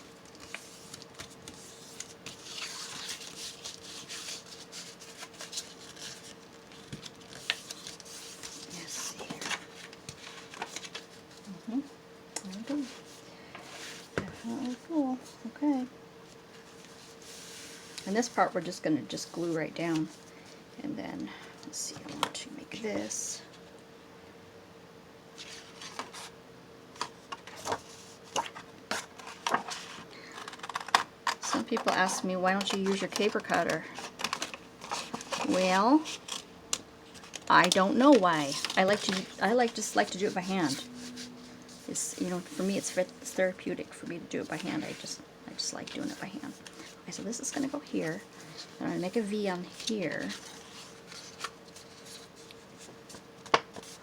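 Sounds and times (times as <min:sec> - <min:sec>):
paper rustling and crinkling: 0:00.0 - 0:11.5, 0:25.4 - 0:26.3, 0:27.0 - 0:54.0.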